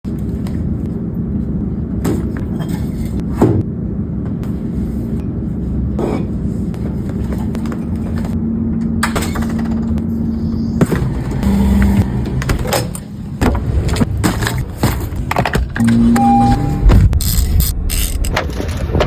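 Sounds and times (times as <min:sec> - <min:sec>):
steady hum: 0:10.0 - 0:18.8.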